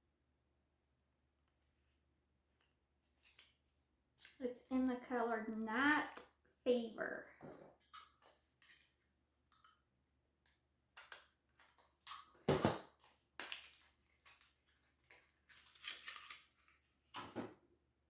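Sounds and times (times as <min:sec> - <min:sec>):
packaging crinkling and rustling: 0:13.0 - 0:17.1.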